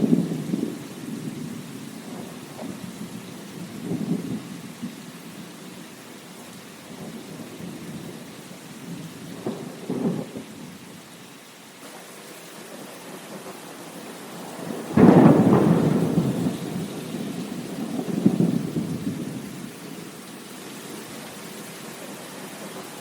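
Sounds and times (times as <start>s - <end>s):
low rolling thunder rumbles: 0.0s - 11.0s, 13.2s - 20.6s
steady rain: 0.0s - 23.0s.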